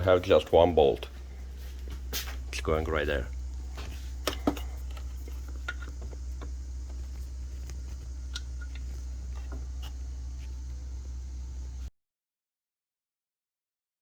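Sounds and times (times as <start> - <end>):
steady low hum: 0.0 - 11.9
hand tools and metal parts clicking: 3.5 - 10.6.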